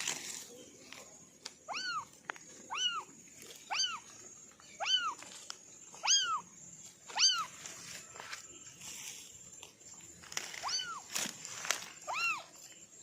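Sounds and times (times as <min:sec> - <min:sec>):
kitten meowing: 0:01.7 - 0:02.1, 0:02.7 - 0:03.1, 0:03.7 - 0:04.1, 0:04.8 - 0:05.2, 0:06.0 - 0:06.4, 0:07.1 - 0:07.5, 0:10.6 - 0:11.1.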